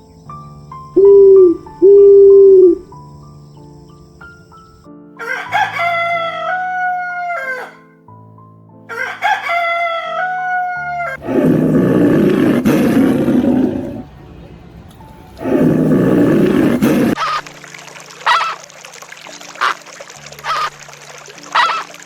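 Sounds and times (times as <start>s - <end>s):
soft background music: 0.0s - 22.0s
rooster crowing: 5.2s - 8.0s, 8.9s - 11.2s, 21.6s - 21.8s
harsh noisy animal sound: 11.1s - 14.1s, 15.4s - 17.4s.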